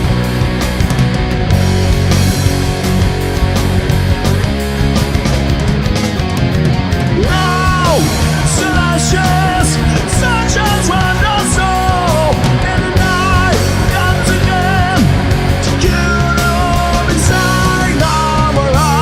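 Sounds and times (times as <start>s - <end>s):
heavy metal band playing: 0.0s - 19.0s
lead guitar melody with bends: 0.0s - 19.0s.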